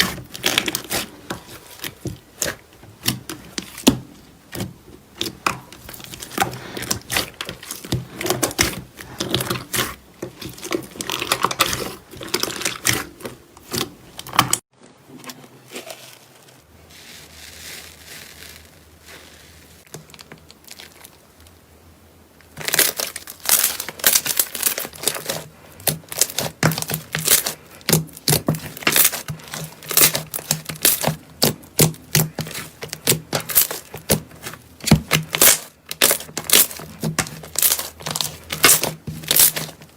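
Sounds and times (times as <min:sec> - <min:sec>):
slime crackling and popping: 0:22.5 - 0:39.8.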